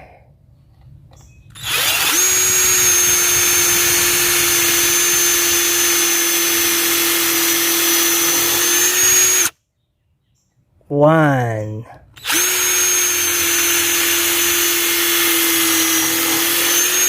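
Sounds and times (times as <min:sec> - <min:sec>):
cordless impact driver whining: 0:01.5 - 0:09.6, 0:12.2 - 0:17.0.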